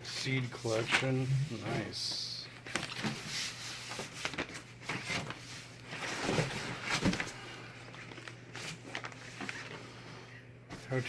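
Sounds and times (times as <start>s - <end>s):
paper rustling: 0.4s - 9.9s.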